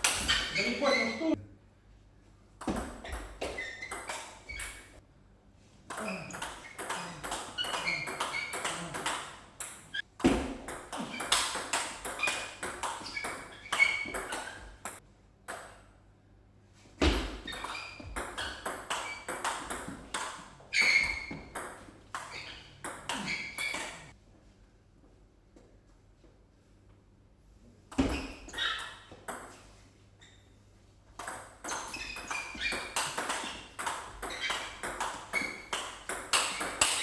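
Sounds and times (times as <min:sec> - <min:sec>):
table tennis ball pinging: 0:02.6 - 0:05.0, 0:05.9 - 0:15.9, 0:17.0 - 0:24.1, 0:31.2 - 0:37.0.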